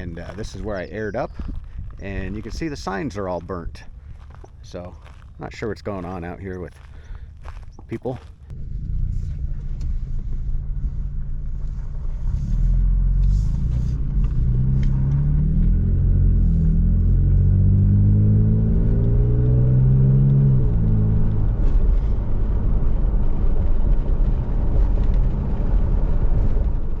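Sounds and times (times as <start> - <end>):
low rumble from drive: 0.0 - 27.0
pickup engine accelerating: 8.4 - 27.0.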